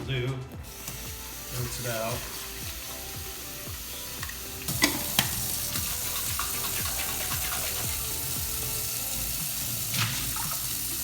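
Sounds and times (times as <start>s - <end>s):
water running into plastic tank: 0.9s - 11.0s.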